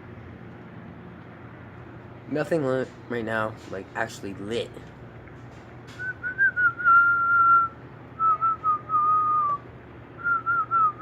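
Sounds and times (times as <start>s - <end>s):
person whistling a tune: 6.0s - 9.6s, 10.2s - 11.0s.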